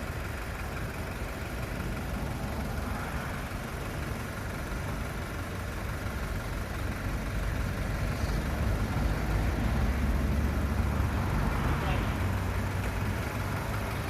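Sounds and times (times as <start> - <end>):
car engine idling: 0.0 - 14.0.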